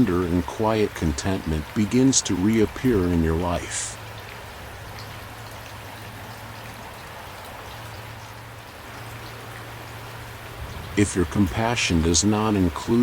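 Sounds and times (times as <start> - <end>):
rain falling: 0.0 - 13.0.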